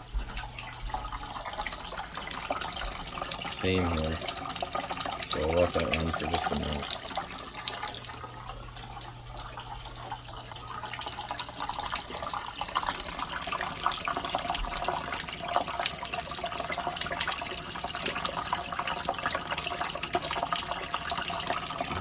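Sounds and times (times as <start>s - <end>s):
tap water running into sink: 0.0s - 22.0s.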